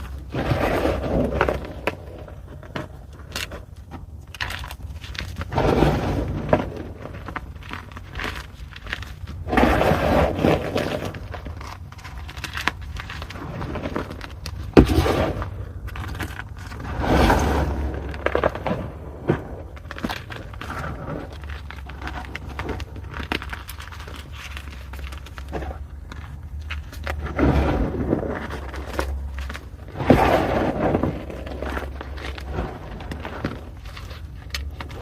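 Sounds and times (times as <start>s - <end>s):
chalk crunching and crumbling: 0.0s - 35.0s.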